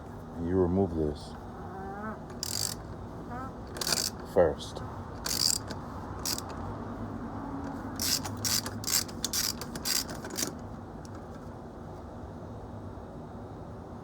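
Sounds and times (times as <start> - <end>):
ratchet wrench clicking: 2.3 - 2.9, 3.7 - 4.3, 5.2 - 6.7, 7.6 - 11.2.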